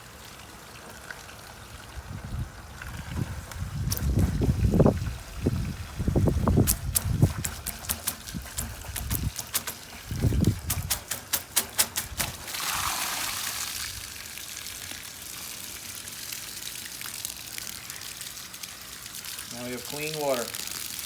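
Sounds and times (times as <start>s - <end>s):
water rushing through gutter: 0.0s - 21.0s
sharp clicks and knocks: 3.9s - 4.6s, 6.6s - 12.5s.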